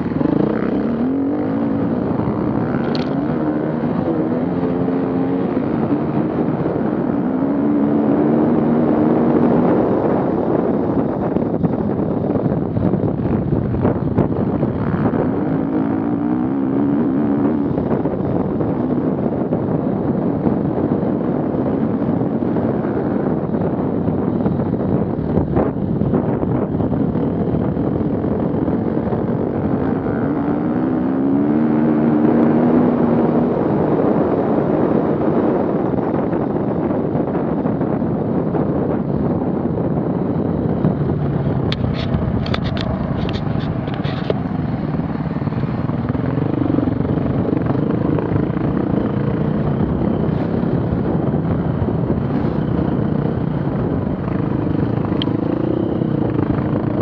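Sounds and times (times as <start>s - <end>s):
engine revving: 0.0s - 11.3s, 12.4s - 19.4s, 27.3s - 35.8s
off-road vehicle engines running: 0.0s - 57.0s.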